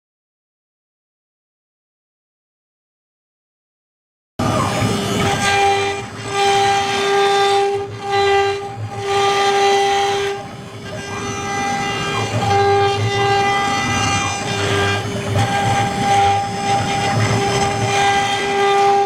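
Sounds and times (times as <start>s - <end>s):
router spindle whining: 4.4s - 19.0s.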